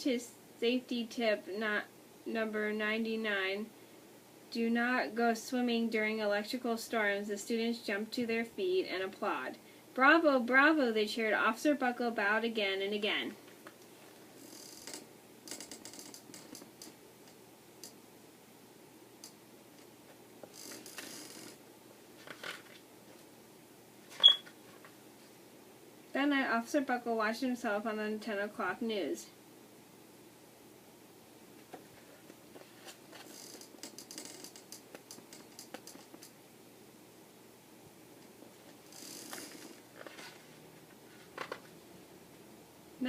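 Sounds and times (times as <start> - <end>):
small clicks and ticks: 14.5 - 18.0, 33.3 - 36.4
paper page rustling: 22.2 - 22.8, 39.9 - 40.5.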